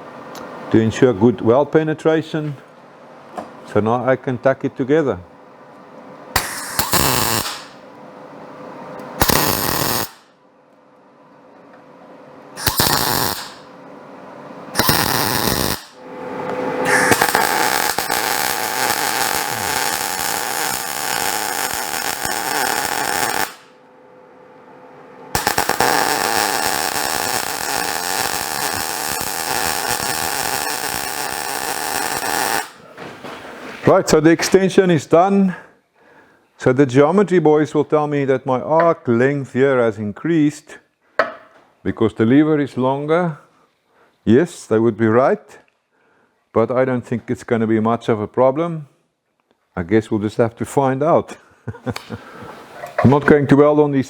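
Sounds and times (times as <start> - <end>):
arc welding crackling: 6.4 - 7.8, 9.2 - 10.3, 12.6 - 13.8, 14.7 - 23.8, 25.3 - 32.9.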